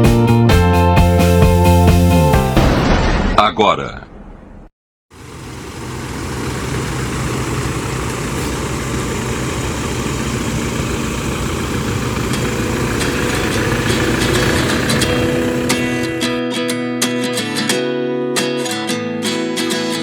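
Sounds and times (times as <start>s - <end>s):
vehicle engine and road rumble: 4.2s - 16.4s.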